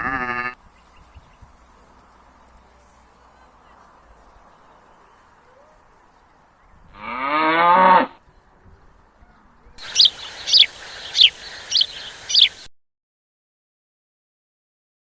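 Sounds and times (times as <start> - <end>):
recorded cow mooing: 0.0 - 0.6, 6.9 - 8.2
recorded bird chirps: 0.6 - 1.6, 9.7 - 12.7.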